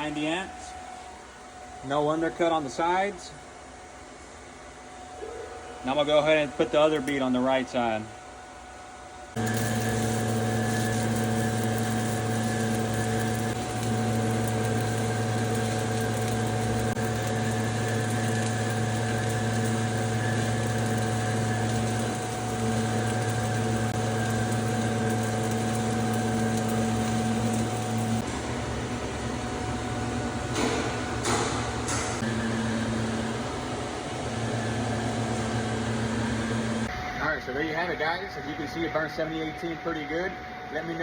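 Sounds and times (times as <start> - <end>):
welding arc hissing: 9.3 - 28.3.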